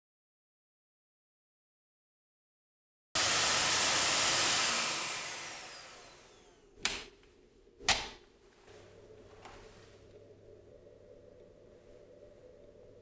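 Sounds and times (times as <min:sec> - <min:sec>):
vacuum cleaner motor whine: 0:03.2 - 0:06.8.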